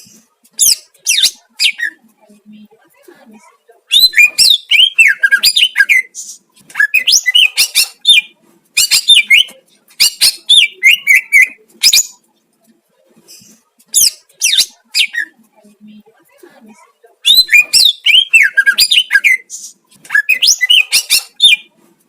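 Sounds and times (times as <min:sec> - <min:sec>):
bird singing whistled phrases: 0:17.2 - 0:19.5, 0:20.1 - 0:21.7.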